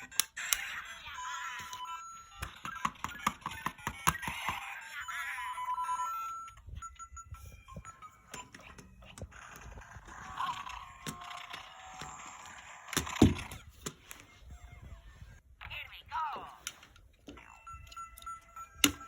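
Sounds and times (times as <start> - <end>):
toy electronic beeps and chirps: 0.0 - 12.9, 17.4 - 19.0.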